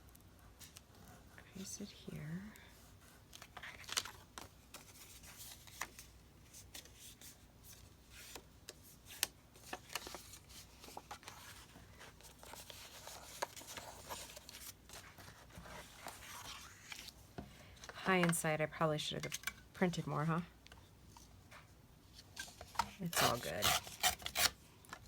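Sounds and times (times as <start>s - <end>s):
paper rustling: 3.1s - 18.4s.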